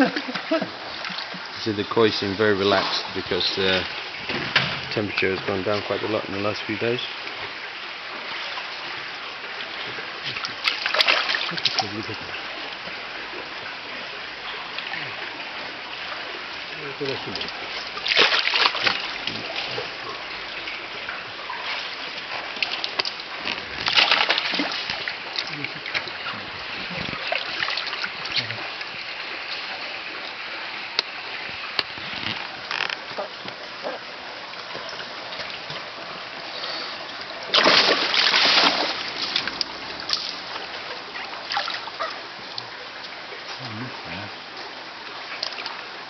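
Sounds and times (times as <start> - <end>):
running water rushing: 0.0 - 46.0
light splashes and clicks: 9.8 - 12.2, 17.1 - 19.9, 20.7 - 29.7, 30.9 - 33.6, 37.4 - 43.7, 45.3 - 45.8.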